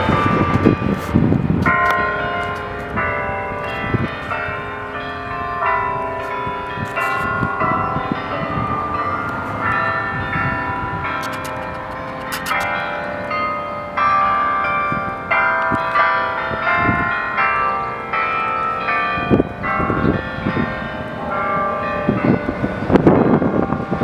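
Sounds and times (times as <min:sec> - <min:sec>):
church bells playing a tune: 0:00.0 - 0:24.0
rush of noise: 0:08.3 - 0:12.8.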